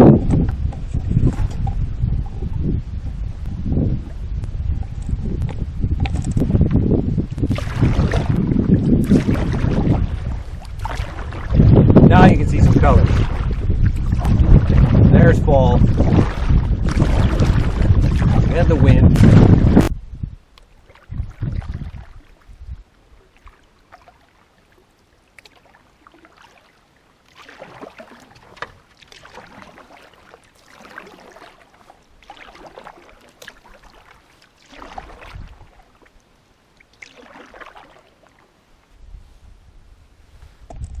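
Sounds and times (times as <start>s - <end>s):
wind rumble on microphone: 0.0s - 23.3s, 34.8s - 35.9s, 38.9s - 41.0s
paddle splashing in water: 0.1s - 2.5s, 4.0s - 19.9s, 20.6s - 38.9s.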